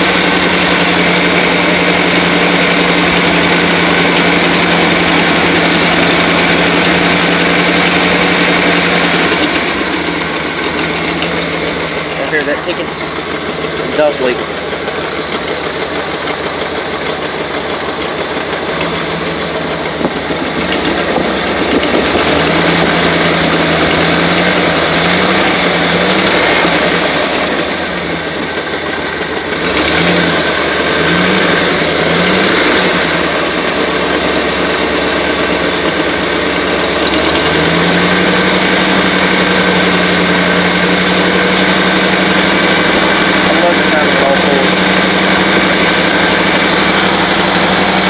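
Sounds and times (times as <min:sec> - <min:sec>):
engine running with exhaust leak: 0:00.0 - 0:48.0.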